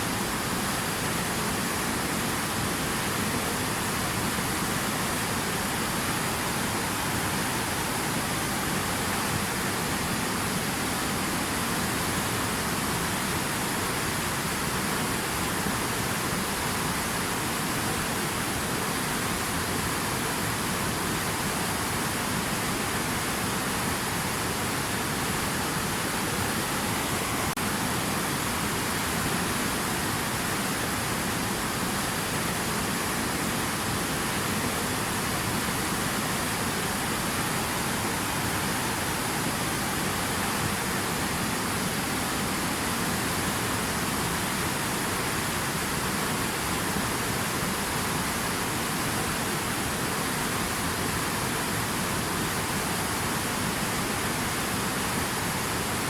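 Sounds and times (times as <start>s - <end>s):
steady rush of water: 0.0s - 56.0s.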